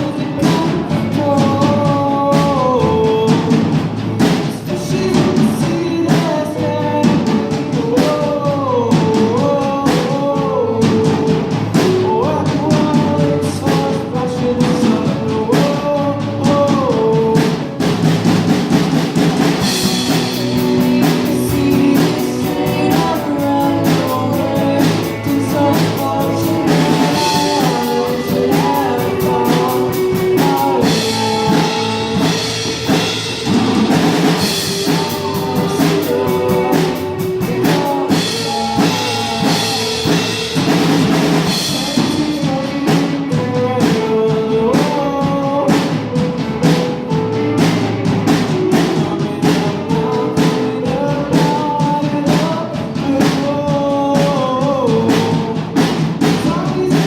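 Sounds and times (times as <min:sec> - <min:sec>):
drum kit: 0:00.0 - 0:57.0
guitar: 0:00.0 - 0:57.0
person singing: 0:00.0 - 0:57.0.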